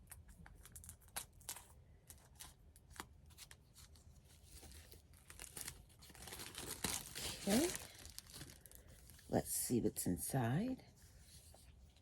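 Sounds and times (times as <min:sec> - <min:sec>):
plastic wrapping rustling: 0:00.4 - 0:09.4.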